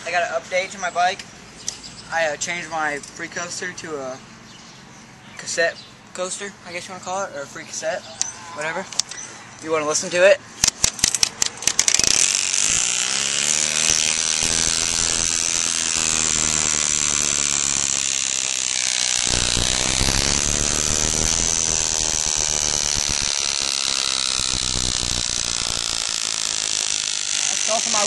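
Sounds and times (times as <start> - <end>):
bike hub ratcheting buzz: 10.6 - 28.0.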